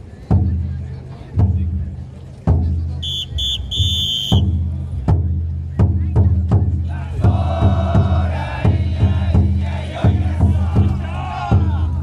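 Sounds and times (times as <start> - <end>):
drum beating steadily: 0.0 - 12.0
men chanting: 6.7 - 12.0.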